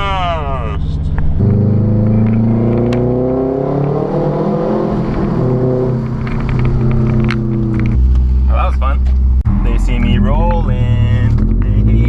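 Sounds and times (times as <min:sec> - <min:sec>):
car engine accelerating hard: 0:00.0 - 0:08.5, 0:09.2 - 0:12.0.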